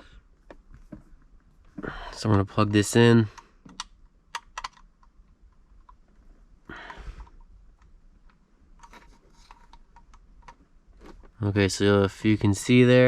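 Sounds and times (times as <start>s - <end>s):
plastic connector clicking: 3.7s - 5.2s.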